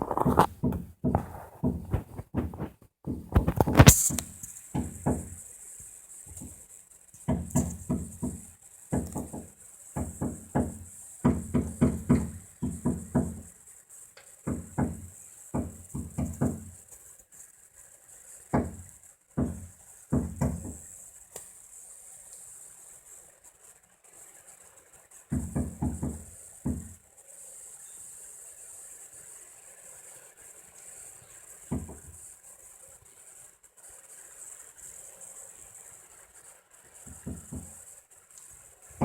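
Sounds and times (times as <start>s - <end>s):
woodpecker pecking at wood: 0.0s - 5.4s, 7.3s - 13.5s.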